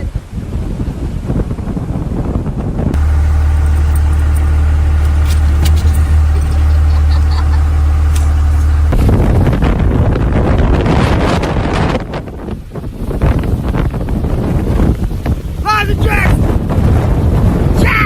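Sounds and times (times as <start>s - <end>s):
wind noise: 0.0s - 18.0s
motor droning: 2.9s - 11.2s.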